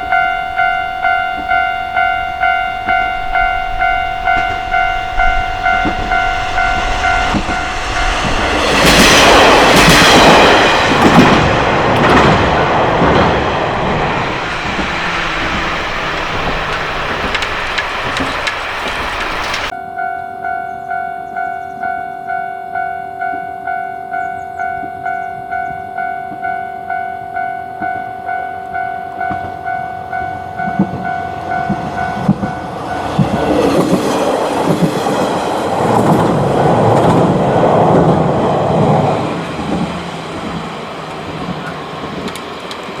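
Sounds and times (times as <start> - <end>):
train wheel clicks: 0.0 - 19.7, 29.1 - 43.0
diesel train engine drone: 0.0 - 19.8, 20.4 - 43.0
level crossing warning bell: 0.0 - 35.8.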